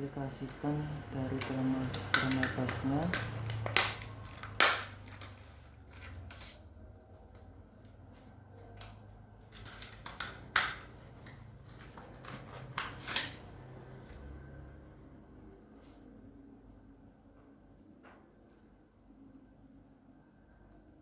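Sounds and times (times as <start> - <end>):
low steady hum: 0.0 - 21.0
tools clicking and tapping: 0.4 - 5.4.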